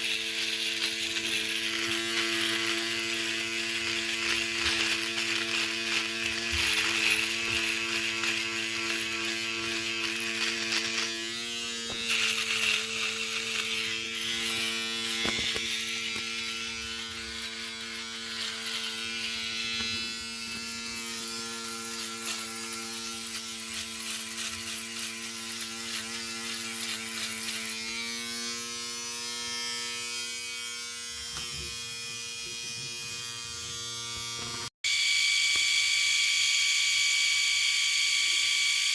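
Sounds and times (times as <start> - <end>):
electric shaver buzzing: 0.0 - 38.9.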